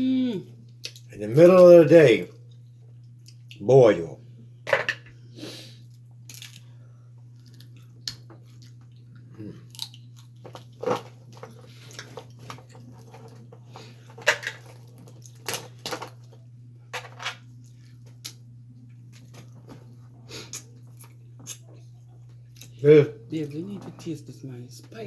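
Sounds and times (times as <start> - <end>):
steady low hum: 0.0 - 25.0
chewing and biting: 7.3 - 13.0.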